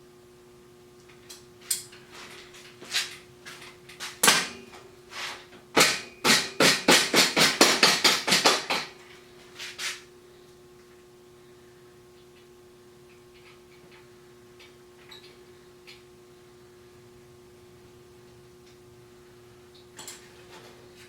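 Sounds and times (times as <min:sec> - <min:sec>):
sharp knocks and clanks: 0:03.5 - 0:04.8, 0:05.8 - 0:09.0.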